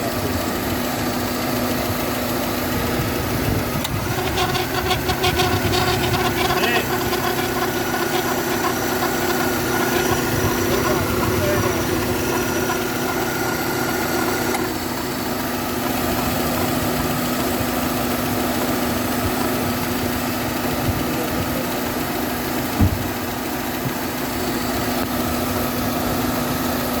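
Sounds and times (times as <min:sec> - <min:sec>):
car engine idling: 0:00.0 - 0:27.0
short knock: 0:22.8 - 0:23.1.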